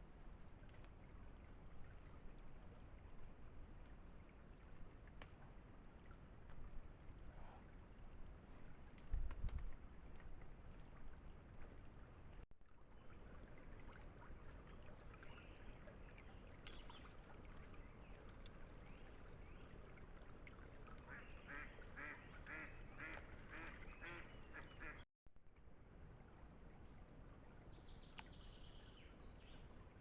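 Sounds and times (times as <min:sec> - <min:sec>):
duck quacking: 0:21.5 - 0:24.2, 0:24.8 - 0:25.0.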